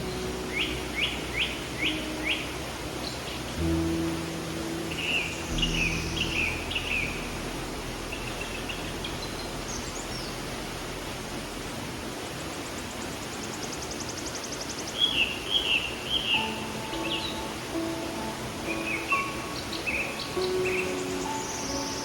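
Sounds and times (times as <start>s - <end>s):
birds singing: 0.0s - 7.5s, 12.5s - 22.0s
stream water flowing: 0.0s - 22.0s.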